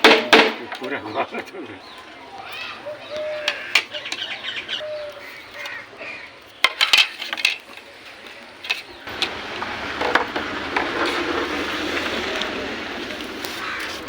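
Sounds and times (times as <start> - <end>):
birds chirping: 0.0 - 14.0.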